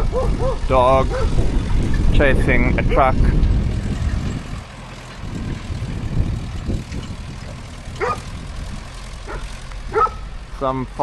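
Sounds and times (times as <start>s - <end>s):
dog barking: 0.0s - 1.3s, 8.0s - 8.2s, 9.3s - 10.2s
truck engine rumbling: 0.0s - 11.0s.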